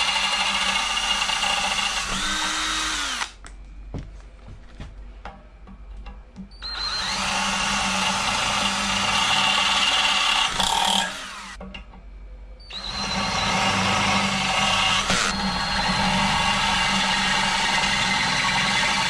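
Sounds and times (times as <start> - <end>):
power drill boring through metal: 0.0 - 3.4, 6.6 - 11.6, 12.7 - 19.0.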